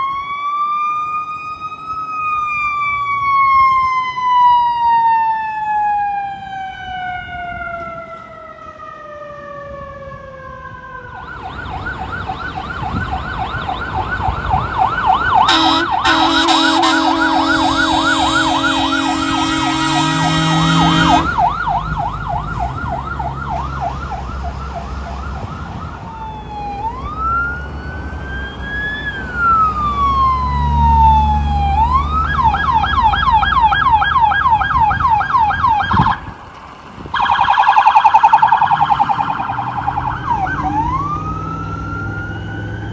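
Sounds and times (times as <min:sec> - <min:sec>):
fire truck siren: 0:00.0 - 0:42.9
diesel engine rumble: 0:10.7 - 0:42.9
air horn blast: 0:15.4 - 0:21.7.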